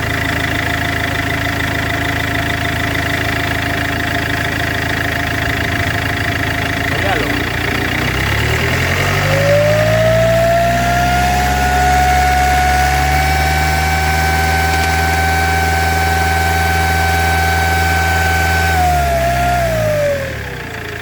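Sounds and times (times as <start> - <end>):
diesel engine revving: 2.5 - 21.0
high turbo whine: 5.2 - 21.0.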